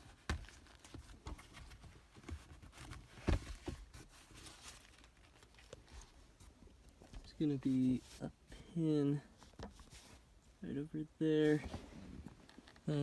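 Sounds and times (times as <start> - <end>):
hands handling objects: 0.0 - 8.2.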